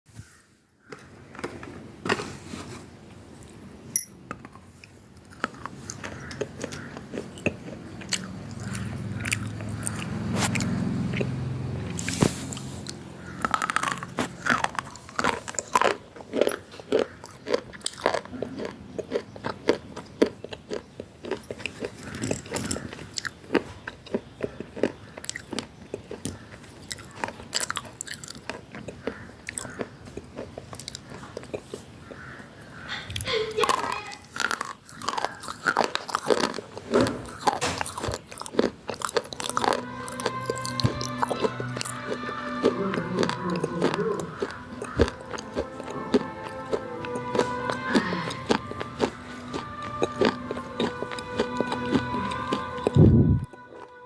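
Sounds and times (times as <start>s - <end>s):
brittle crunches of chewing: 4.3s - 54.0s
low hum: 39.4s - 54.0s.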